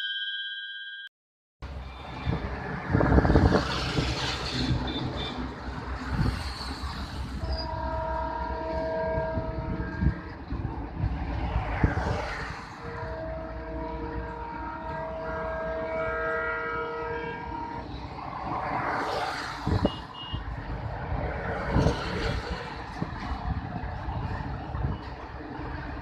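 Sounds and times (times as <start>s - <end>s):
train rumble: 1.6s - 26.0s
locomotive horn blast: 7.2s - 20.5s.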